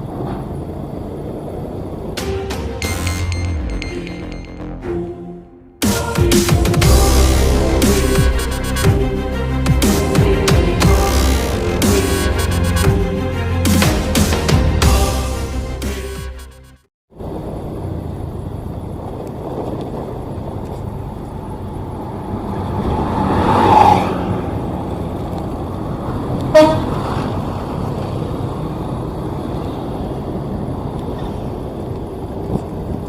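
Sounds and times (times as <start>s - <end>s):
vehicle engine and road noise: 0.0s - 5.8s, 6.8s - 33.0s
short sharp horn toot: 26.5s - 27.0s
vehicle horn: 26.5s - 27.0s.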